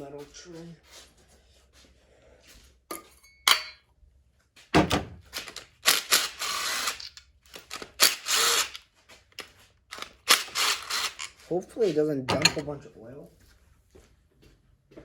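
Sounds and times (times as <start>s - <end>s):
power tool bursts: 5.8s - 8.8s, 10.0s - 11.4s
metal tray clanking: 12.3s - 12.8s.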